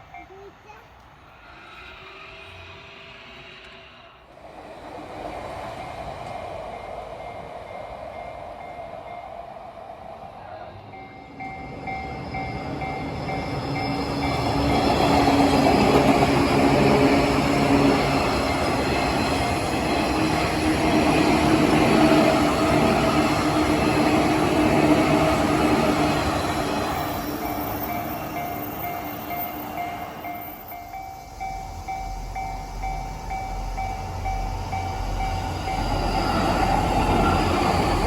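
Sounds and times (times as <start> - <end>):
train wheels rumbling on rails: 0.0 - 38.0
level-crossing bell dinging: 10.8 - 38.0.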